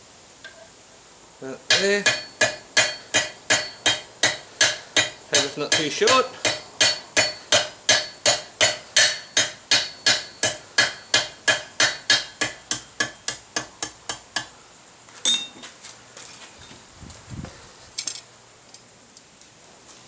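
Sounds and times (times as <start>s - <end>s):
sharp metal clink: 1.7s - 12.9s, 15.3s - 15.6s
hammer striking metal on anvil: 1.7s - 14.5s
faint metal clatter: 17.9s - 20.0s.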